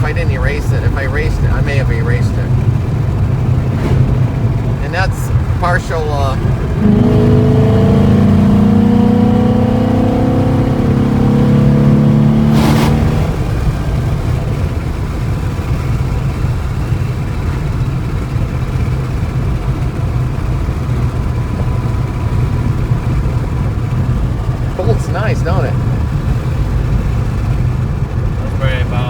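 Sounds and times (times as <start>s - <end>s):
car engine accelerating: 0.0s - 29.0s
low road rumble: 0.0s - 29.0s
brief sharp sound: 3.5s - 5.6s.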